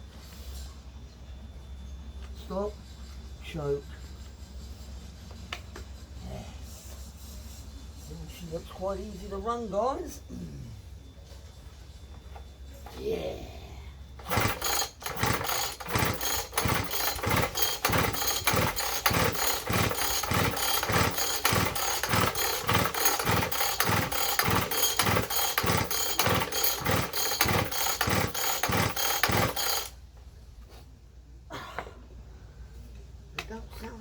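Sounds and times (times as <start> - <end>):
disc cutter engine running: 14.2 - 29.9.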